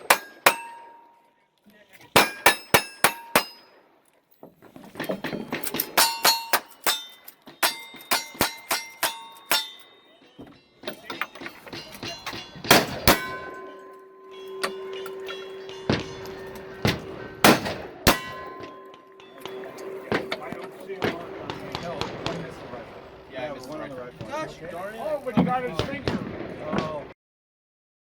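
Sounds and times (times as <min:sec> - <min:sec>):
bullets clanging on steel targets: 0:00.0 - 0:01.2, 0:02.0 - 0:03.8, 0:05.0 - 0:22.1
rapid gunshots: 0:17.4 - 0:18.4.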